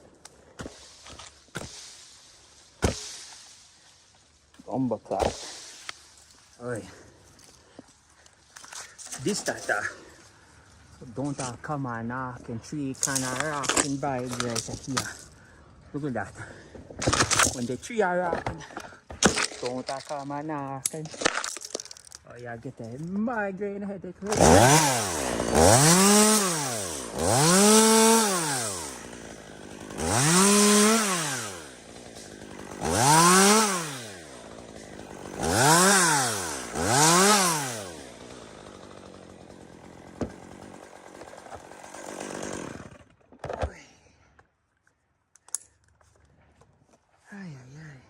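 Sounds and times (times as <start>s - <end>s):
chainsaw revving: 24.3s - 43.2s.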